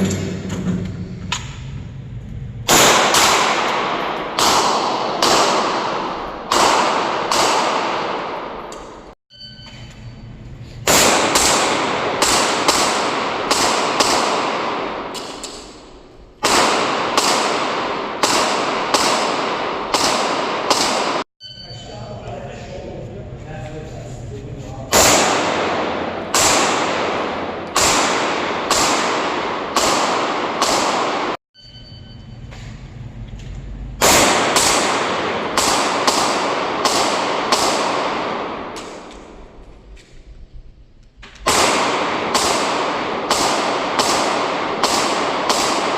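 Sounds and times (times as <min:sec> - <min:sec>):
handgun shots with echo: 0:02.7 - 0:09.1, 0:10.8 - 0:21.2, 0:24.9 - 0:31.4, 0:34.0 - 0:40.2, 0:41.2 - 0:45.9.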